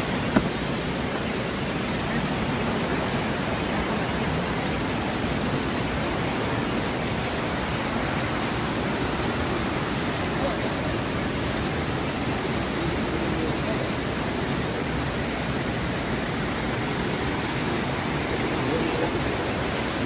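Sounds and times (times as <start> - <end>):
waterfall rushing: 0.0 - 20.0
short knock: 0.3 - 0.6.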